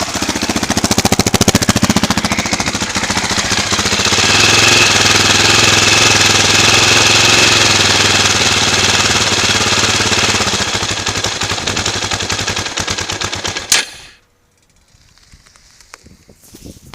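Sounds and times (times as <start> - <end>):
single-cylinder motorcycle engine running: 0.0 - 13.8
sharp exhaust pop: 13.5 - 14.2.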